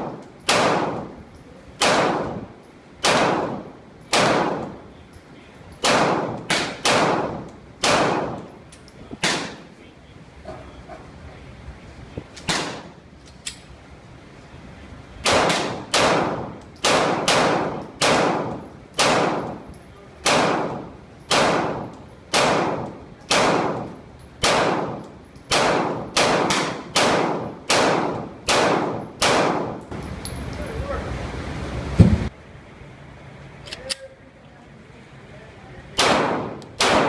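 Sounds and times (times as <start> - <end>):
pistol shots: 0.0 - 1.2, 1.8 - 4.8, 5.8 - 8.5, 9.2 - 9.7, 12.4 - 13.0, 15.2 - 19.6, 20.2 - 29.8, 36.0 - 37.0.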